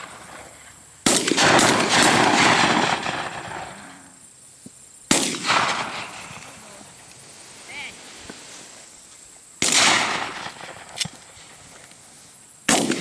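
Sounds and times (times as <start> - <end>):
shotgun shots with rolling echo: 0.0 - 4.0, 5.1 - 6.7, 9.6 - 11.2, 12.7 - 13.0.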